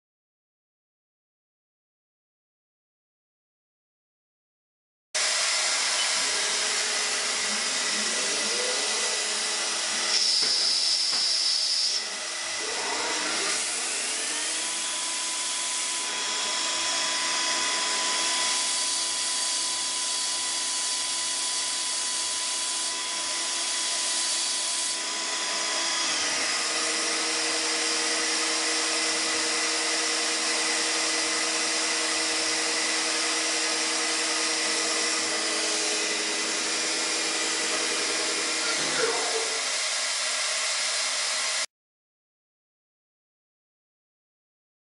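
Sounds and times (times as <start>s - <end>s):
lathe running: 5.2s - 41.6s
spindle whine: 34.8s - 39.8s.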